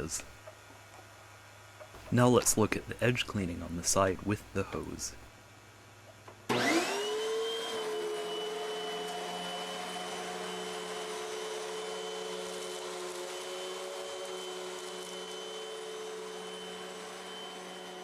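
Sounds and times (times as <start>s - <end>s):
vacuum cleaner motor whine: 6.5s - 18.0s.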